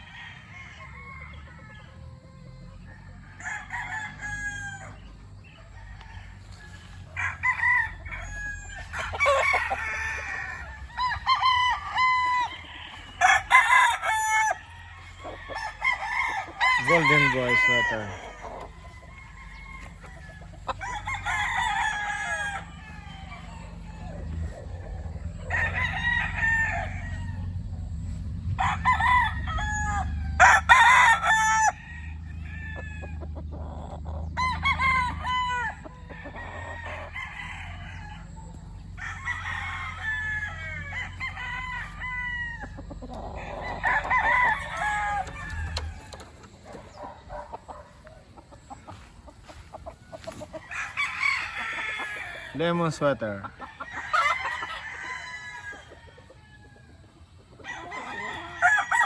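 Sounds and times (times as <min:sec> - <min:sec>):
roosters crowing: 0:00.0 - 0:59.0
low steady rumble: 0:18.1 - 0:50.7.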